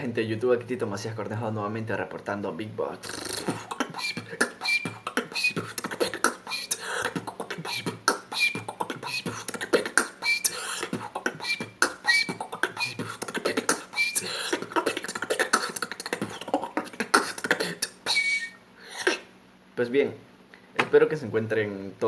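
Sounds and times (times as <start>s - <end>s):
beatboxing kick and snare: 3.0s - 19.3s
cough whistle: 17.6s - 19.3s.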